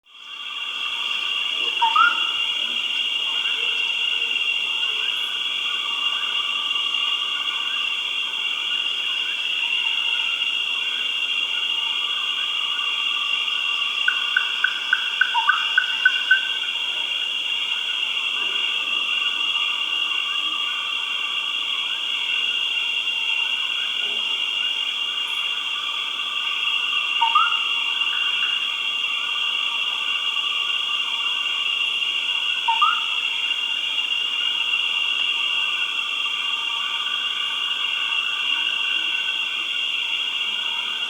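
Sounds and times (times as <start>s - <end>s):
high-pitched insect drone: 0.1s - 41.0s
quick rhythmic chirps: 14.1s - 16.6s.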